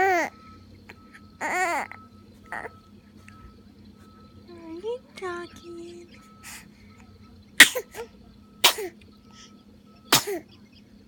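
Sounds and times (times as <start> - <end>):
baby squeaking: 1.4 - 2.7
baby sneezing: 7.6 - 9.0, 10.1 - 10.4.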